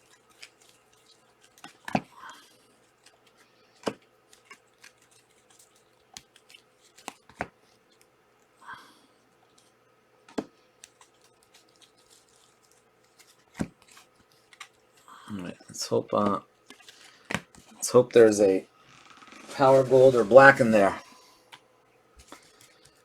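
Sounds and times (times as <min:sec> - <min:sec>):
cards clicking and tapping: 0:03.3 - 0:07.6, 0:16.2 - 0:17.8
card packs rustling: 0:10.8 - 0:21.2.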